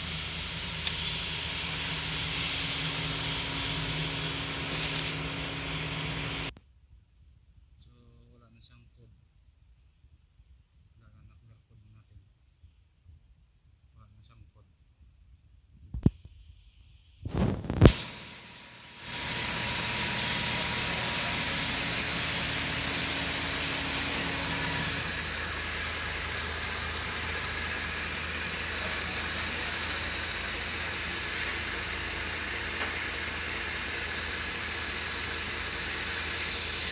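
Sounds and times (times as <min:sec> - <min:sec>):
car engine idling: 0:00.0 - 0:06.5, 0:17.9 - 0:36.9.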